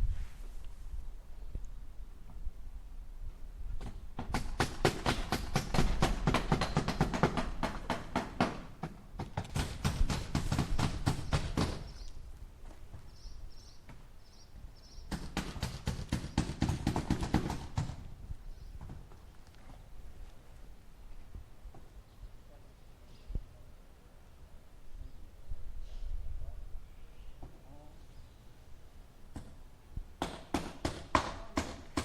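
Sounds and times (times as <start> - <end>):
hammer striking nails into wood: 3.8 - 11.9, 15.1 - 18.0, 30.2 - 32.0.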